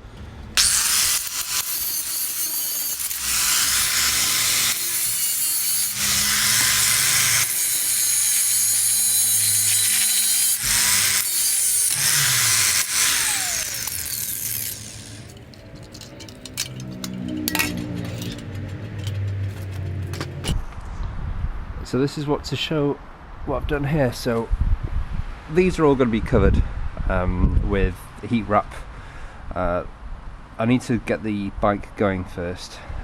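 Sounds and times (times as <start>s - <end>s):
power tool grinding metal: 0.6s - 18.8s.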